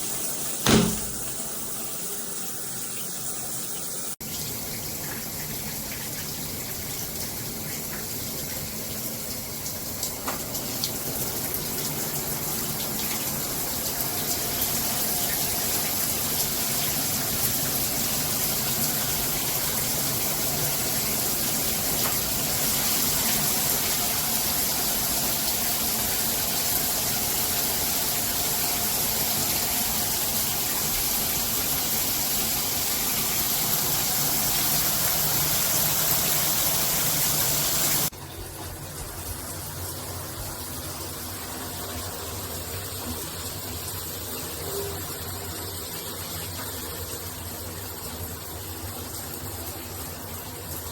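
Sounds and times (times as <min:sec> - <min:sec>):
shower water hissing: 0:04.3 - 0:38.1.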